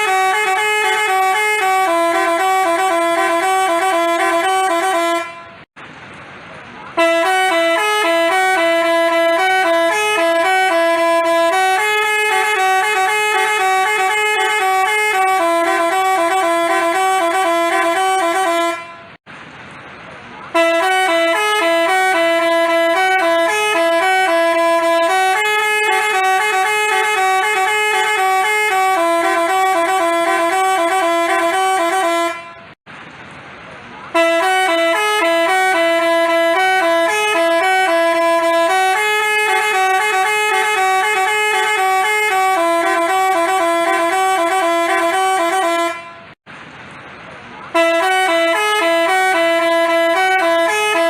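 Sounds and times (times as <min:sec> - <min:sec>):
musical bus horn playing a tune: 0:00.0 - 0:05.7, 0:06.9 - 0:19.2, 0:20.5 - 0:32.8, 0:34.1 - 0:46.4, 0:47.7 - 0:51.0.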